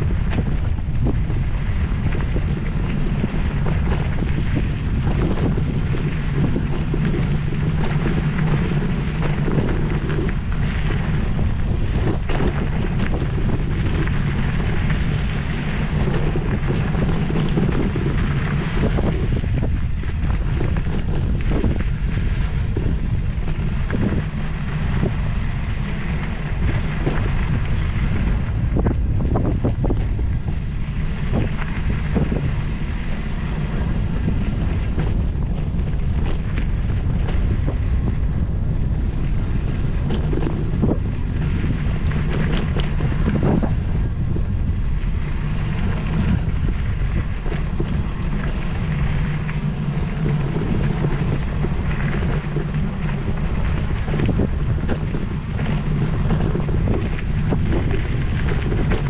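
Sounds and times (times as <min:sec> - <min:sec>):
wind buffeting on microphone: 0:00.0 - 0:59.0.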